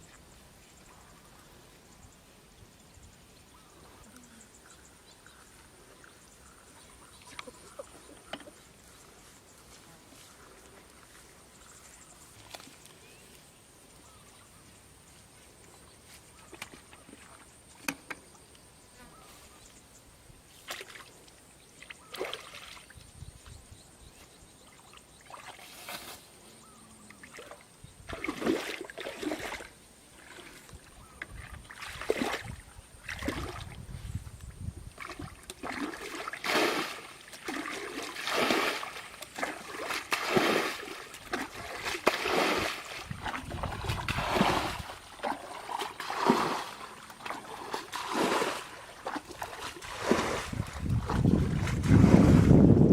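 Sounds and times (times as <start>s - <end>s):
water splashing and sloshing: 16.3s - 18.3s, 20.5s - 23.0s, 24.8s - 26.2s, 27.1s - 52.9s.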